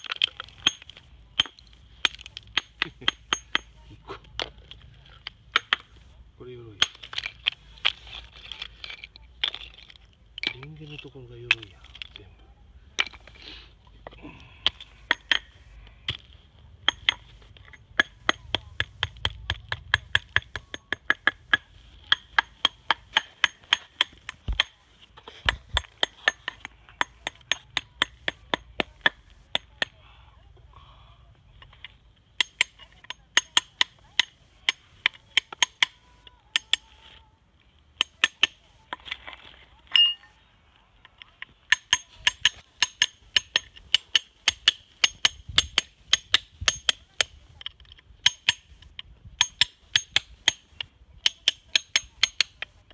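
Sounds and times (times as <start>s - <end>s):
hammer tapping on stone: 0.6s - 3.8s, 14.0s - 24.8s, 25.4s - 30.0s, 32.4s - 37.0s, 41.7s - 52.9s.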